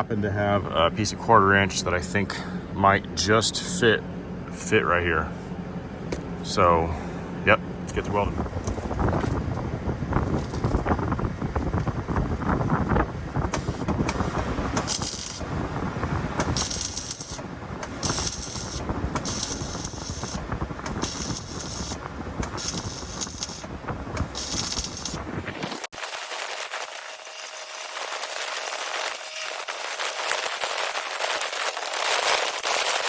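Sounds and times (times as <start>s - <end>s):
wind rumble on microphone: 7.9s - 26.3s
welding arc crackling: 13.5s - 15.7s, 16.3s - 33.0s.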